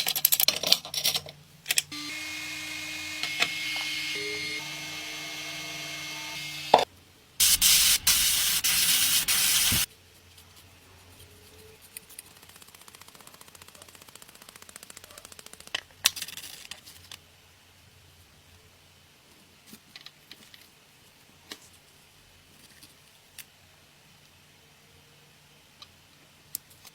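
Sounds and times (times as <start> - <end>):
compressed air spraying: 7.4 - 9.9.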